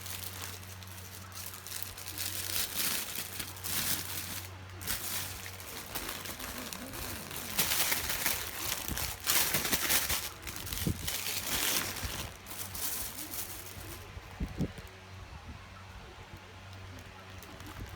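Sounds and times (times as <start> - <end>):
rustling and crinkling: 0.0 - 15.0, 16.7 - 17.9
low steady hum: 0.0 - 17.9.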